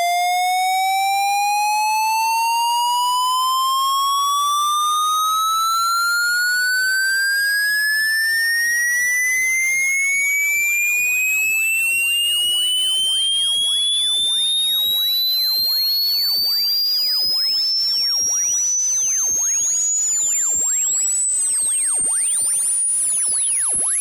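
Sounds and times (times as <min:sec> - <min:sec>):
electronic test tone sweeping upward: 0:00.0 - 0:24.0
faint whistling tones sliding: 0:07.4 - 0:24.0.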